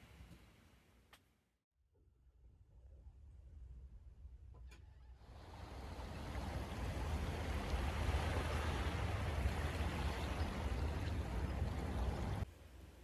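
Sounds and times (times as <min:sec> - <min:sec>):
sea water washing on shore: 0:05.4 - 0:12.4.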